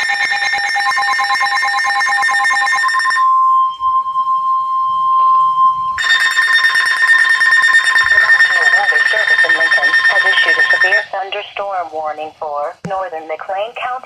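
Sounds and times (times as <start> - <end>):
pulsing electronic alarm: 0.0 - 11.2
steady alert tone: 5.3 - 11.2.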